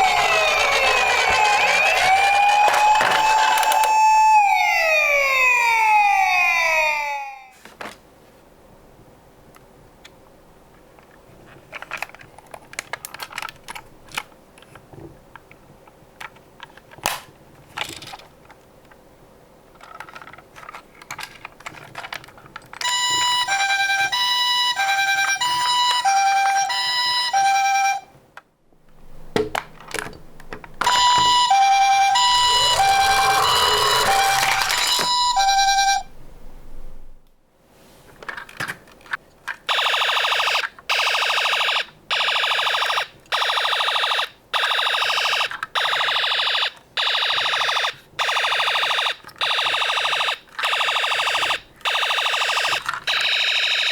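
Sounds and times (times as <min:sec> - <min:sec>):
toy cars clicking and knocking: 0:00.0 - 0:04.0, 0:11.6 - 0:14.8, 0:17.7 - 0:18.6, 0:19.8 - 0:22.9, 0:32.2 - 0:35.9, 0:45.3 - 0:45.8, 0:52.6 - 0:53.2
two-tone ambulance siren: 0:00.0 - 0:07.5, 0:22.8 - 0:28.1, 0:30.8 - 0:36.1, 0:39.7 - 0:53.9.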